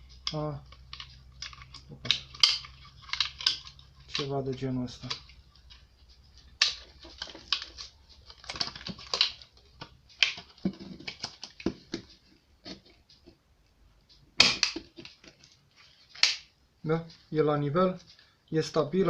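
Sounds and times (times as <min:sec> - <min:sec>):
plastic parts clicking into place: 0:00.2 - 0:05.4, 0:06.4 - 0:13.4, 0:14.4 - 0:16.5.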